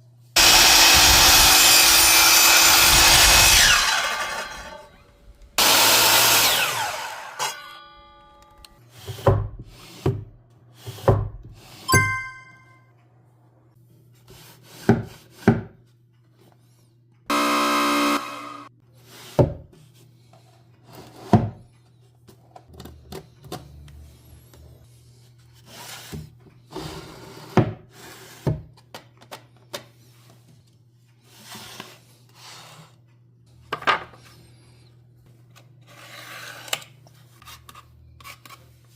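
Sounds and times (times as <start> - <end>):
power tool running: 0.4 - 4.9, 5.6 - 7.8, 17.3 - 18.7.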